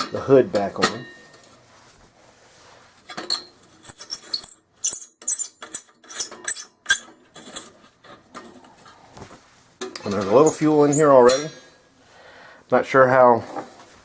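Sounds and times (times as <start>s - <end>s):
sheet metal clinking and rattling: 3.1s - 9.0s, 9.8s - 11.8s.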